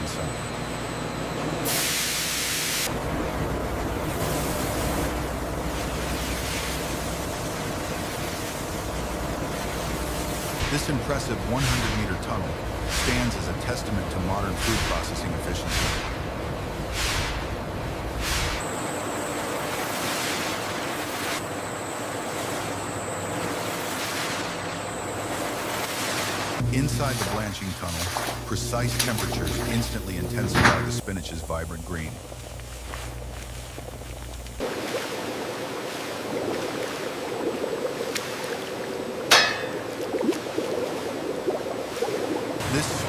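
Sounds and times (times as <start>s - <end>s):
machinery hum: 0.0s - 43.0s
steady rushing surf-like noise: 2.1s - 32.2s, 42.0s - 43.0s
sharp metal clank: 39.3s - 39.8s.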